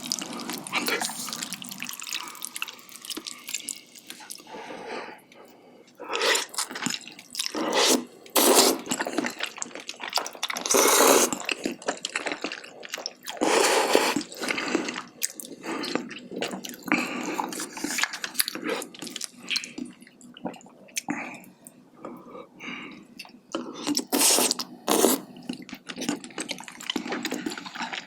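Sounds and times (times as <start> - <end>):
chewing: 0.0 - 4.5, 5.3 - 22.2, 22.8 - 28.0
wet slurping: 7.6 - 9.3, 10.7 - 11.5, 24.0 - 25.2.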